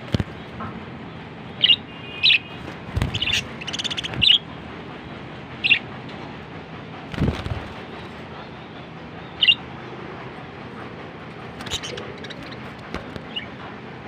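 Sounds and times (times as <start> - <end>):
budgerigars chirping: 1.6 - 4.4, 9.4 - 9.6, 11.6 - 13.5
rattling bird chatter: 1.6 - 6.0, 9.2 - 9.7, 11.4 - 13.8.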